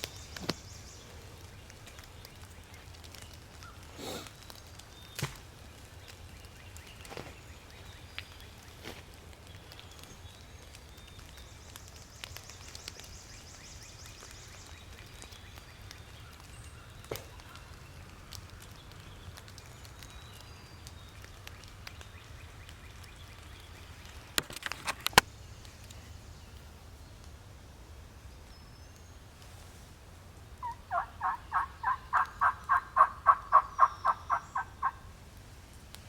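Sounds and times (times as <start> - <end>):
turkey yelps: 30.6 - 35.1.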